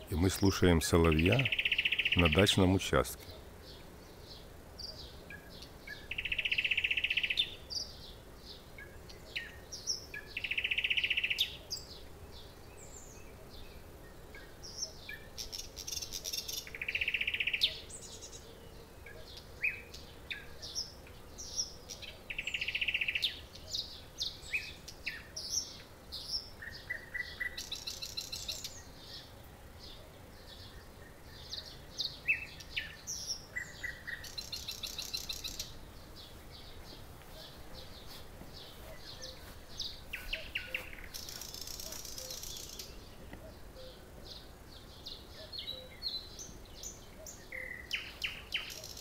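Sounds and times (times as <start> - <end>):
nightingale singing: 0.0 - 49.0.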